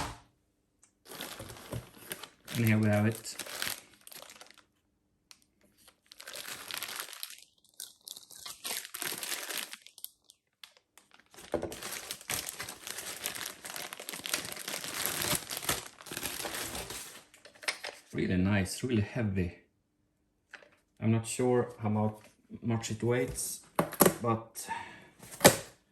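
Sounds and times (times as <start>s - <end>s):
packaging crinkling and rustling: 1.0s - 18.1s.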